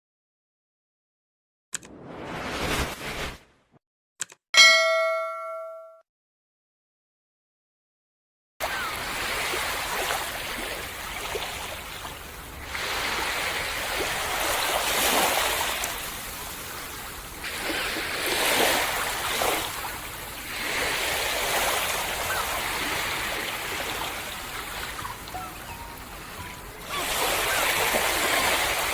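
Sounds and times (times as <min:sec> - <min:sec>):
ocean waves breaking on beach: 0:08.6 - 0:28.9.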